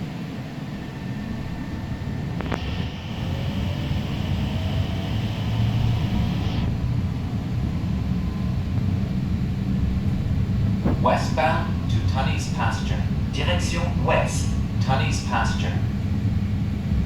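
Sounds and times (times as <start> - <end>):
train interior rumble: 0.0 - 17.0
high whine: 2.4 - 6.8, 10.8 - 16.0.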